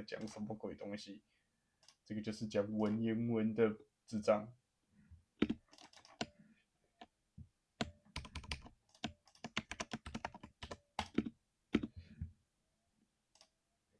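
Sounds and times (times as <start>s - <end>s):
mechanical keyboard typing: 5.4s - 6.4s, 7.8s - 12.0s.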